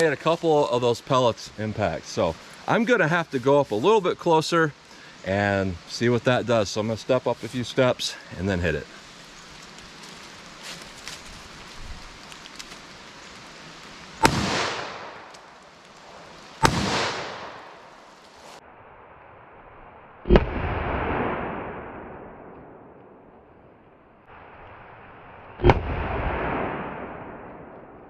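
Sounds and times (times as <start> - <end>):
revolver shots: 14.2 - 15.3, 16.6 - 17.8.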